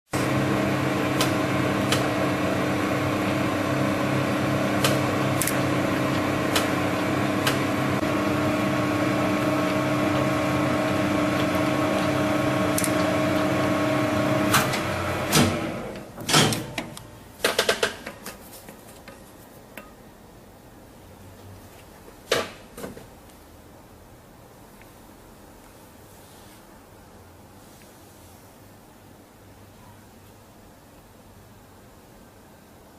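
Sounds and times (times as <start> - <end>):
lathe motor hum: 0.2 - 16.0.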